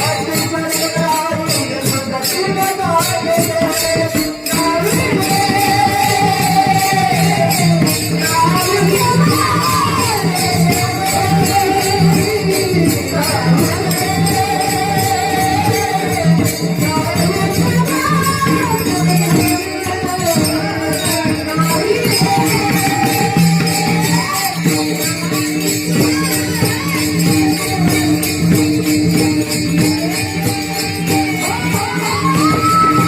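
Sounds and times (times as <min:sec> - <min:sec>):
man singing: 0:00.0 - 0:24.2
hand cymbals jingling: 0:00.0 - 0:33.0.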